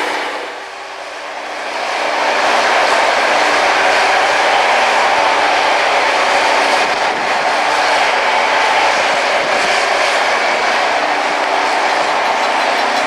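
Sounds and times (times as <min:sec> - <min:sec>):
engine tones: 0:00.0 - 0:01.2
grinding wheels on rail: 0:00.0 - 0:13.0.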